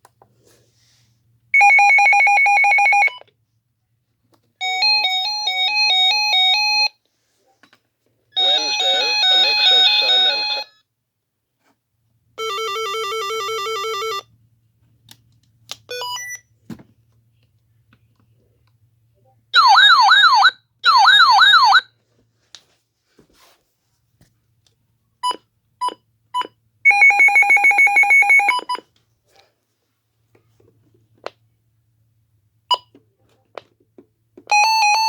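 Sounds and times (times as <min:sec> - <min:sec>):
yelp siren: 0:19.6 - 0:21.8.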